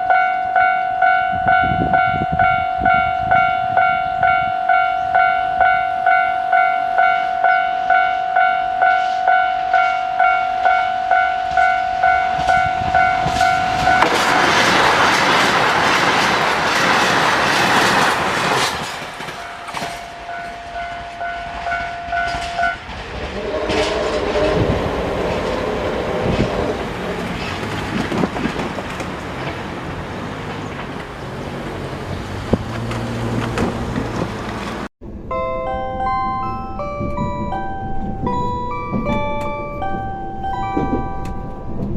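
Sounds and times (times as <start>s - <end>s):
level crossing bell ringing: 0.0s - 14.6s, 19.4s - 22.9s, 35.2s - 41.9s
diesel train rumble: 0.6s - 41.9s
train wheel clatter: 12.3s - 34.9s, 37.0s - 41.9s.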